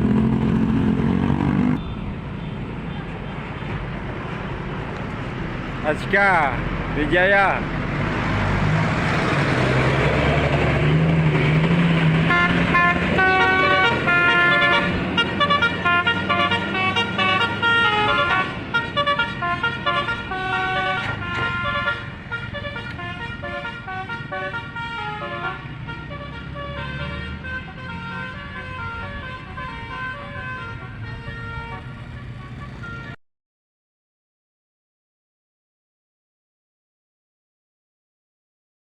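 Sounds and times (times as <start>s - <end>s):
bus engine running: 0.0s - 33.2s
multi-tone musical air horn: 12.3s - 33.2s.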